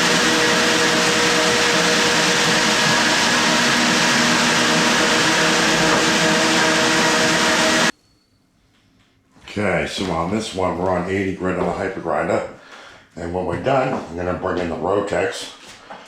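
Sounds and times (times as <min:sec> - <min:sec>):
floor sander droning: 0:00.0 - 0:07.9.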